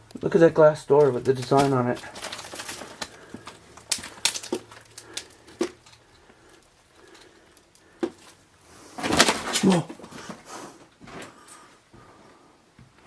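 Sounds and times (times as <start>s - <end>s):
footsteps crunching on debris: 0.1s - 10.4s.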